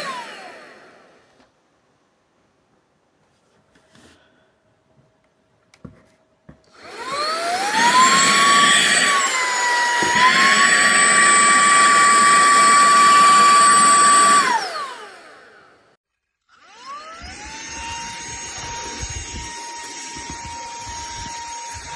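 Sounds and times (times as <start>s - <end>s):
handheld vacuum motor whine: 0.0s - 1.3s, 6.7s - 15.9s, 16.6s - 21.9s.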